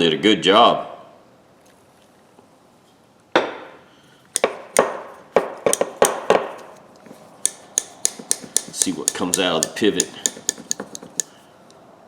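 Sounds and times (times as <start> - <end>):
pliers clicking metal on metal: 4.4 - 5.0, 5.7 - 6.3, 7.0 - 11.4.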